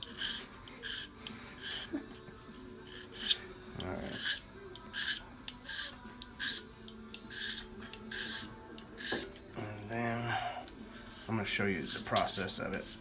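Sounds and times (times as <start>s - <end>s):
file rasping on metal: 0.0s - 2.0s, 2.8s - 9.4s, 11.0s - 13.0s.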